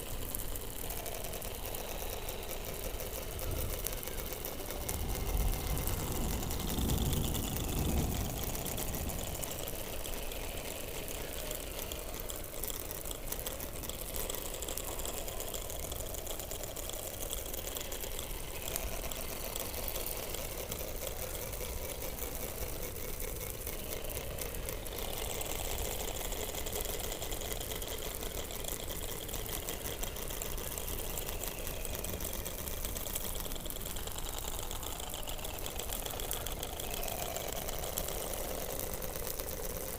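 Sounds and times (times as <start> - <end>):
underwater crackle of clicks: 0.0 - 39.9.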